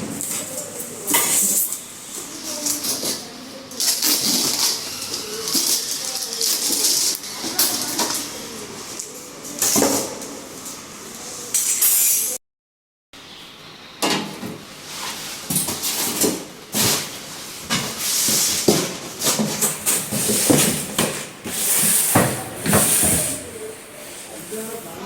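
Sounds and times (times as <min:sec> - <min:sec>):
hard objects clattering: 0:15.5 - 0:23.5.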